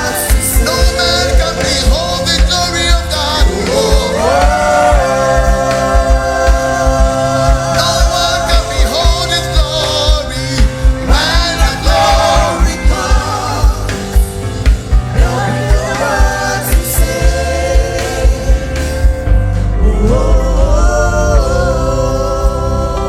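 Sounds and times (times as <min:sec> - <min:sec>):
band with steady drum beat: 0:00.0 - 0:23.0
gospel singing: 0:00.0 - 0:23.0.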